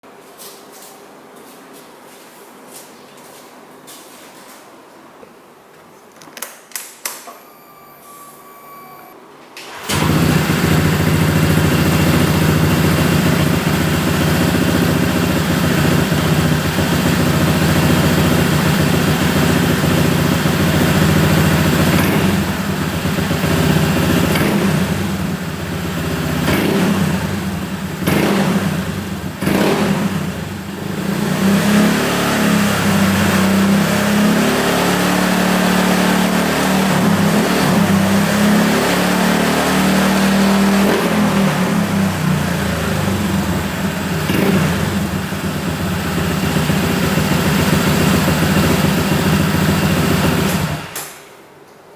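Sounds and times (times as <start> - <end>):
scooter engine idling: 7.5 - 31.3, 40.8 - 51.0
engine revving: 7.6 - 51.0.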